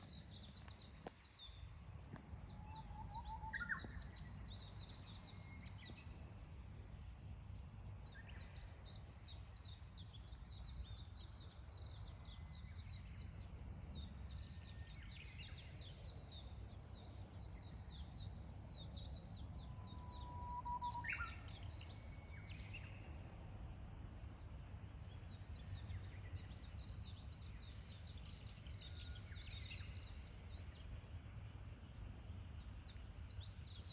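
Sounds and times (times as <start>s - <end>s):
bird whistling song: 2.6s - 4.1s, 19.6s - 22.8s.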